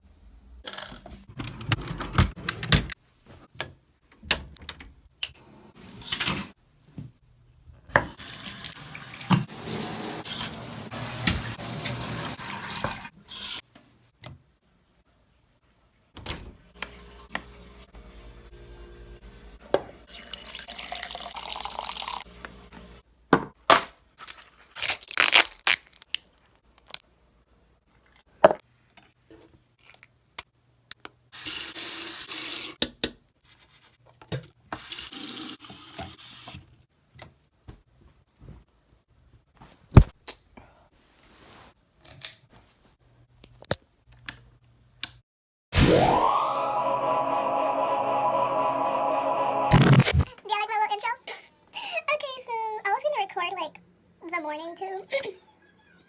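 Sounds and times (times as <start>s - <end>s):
tap water splashing into sink: 9.2s - 13.0s.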